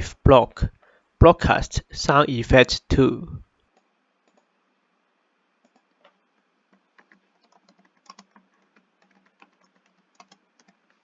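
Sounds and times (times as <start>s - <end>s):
faint keyboard typing: 3.6s - 4.6s, 5.6s - 11.0s.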